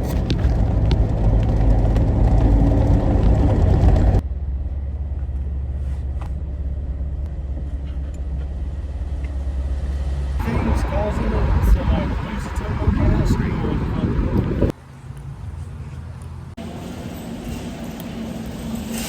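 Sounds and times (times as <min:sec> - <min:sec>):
low engine drone: 0:00.0 - 0:14.8
road rumble: 0:00.0 - 0:19.0
wind noise: 0:10.4 - 0:14.8.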